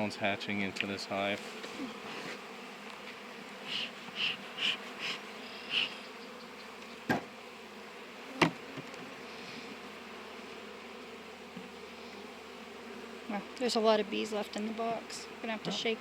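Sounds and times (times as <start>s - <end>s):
honeybees buzzing: 0.0s - 16.0s
scraping wax cappings: 0.0s - 16.0s
sharp knocks: 7.1s - 7.3s.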